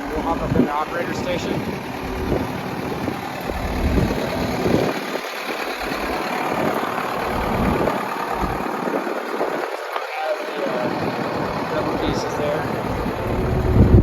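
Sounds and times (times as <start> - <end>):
low rumble on microphone: 0.0 - 5.0, 5.8 - 8.7, 11.4 - 14.0
diesel engine idling: 0.0 - 14.0.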